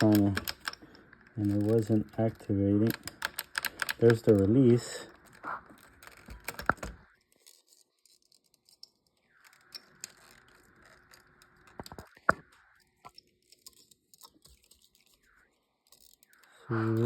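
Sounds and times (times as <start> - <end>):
plastic handle clicking and rattling: 6.0 - 7.0.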